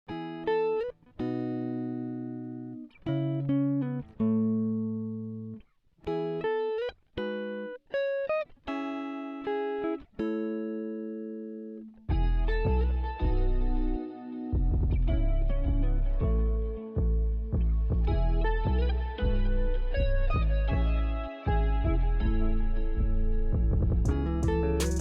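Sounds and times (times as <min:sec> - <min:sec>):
plucked-string melody: 0:00.1 - 0:25.0
music with strong bass: 0:12.1 - 0:25.0.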